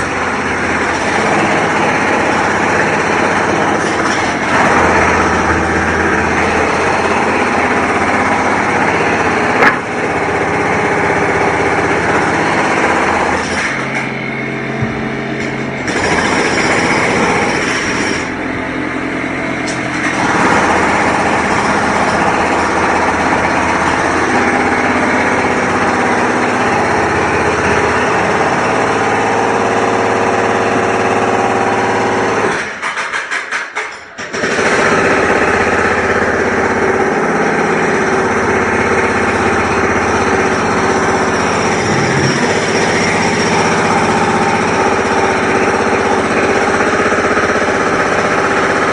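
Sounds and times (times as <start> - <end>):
construction machinery running: 0.0 - 48.9.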